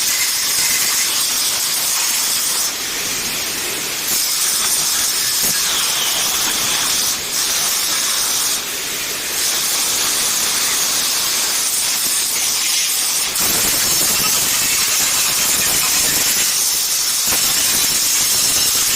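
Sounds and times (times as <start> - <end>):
angle grinder grinding metal: 0.0 - 18.9.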